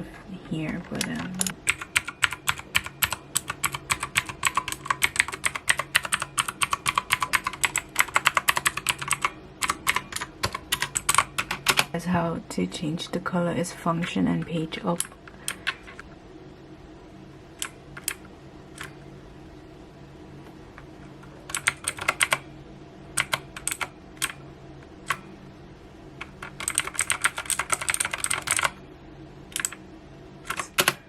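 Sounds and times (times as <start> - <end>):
clicky keyboard typing: 0.4 - 11.9, 14.0 - 16.0, 17.6 - 18.2, 20.7 - 22.4, 23.2 - 24.4, 25.0 - 25.3, 26.2 - 28.8, 29.5 - 29.8, 30.4 - 31.0.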